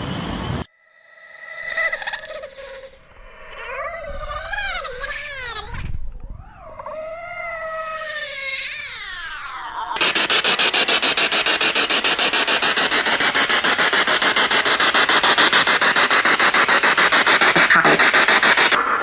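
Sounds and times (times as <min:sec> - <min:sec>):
pulsing radio static: 0:10.0 - 0:19.0.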